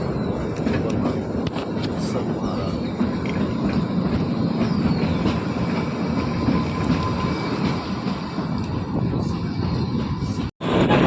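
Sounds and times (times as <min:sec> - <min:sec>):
train wheels rumbling on rails: 0:00.0 - 0:11.0.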